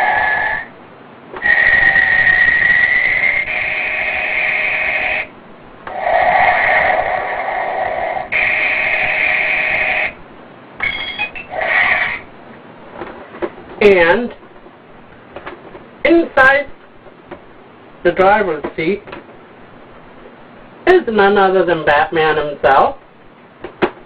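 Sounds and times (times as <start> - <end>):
toy electronic tones: 1.4 - 5.3, 8.3 - 10.2, 10.8 - 12.2
short choppy electronic blips: 8.2 - 10.2, 10.8 - 12.2.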